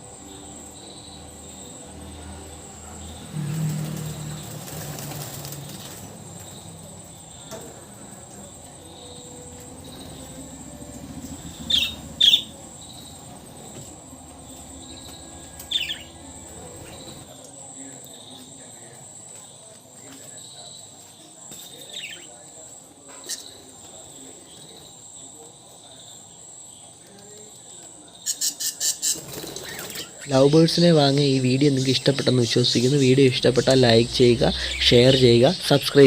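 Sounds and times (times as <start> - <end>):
crickets chirring: 0.0 - 36.0
birds fluttering wings in cage: 3.0 - 17.4, 27.7 - 34.8
sharp high bird chirps: 11.4 - 13.2, 14.8 - 17.1.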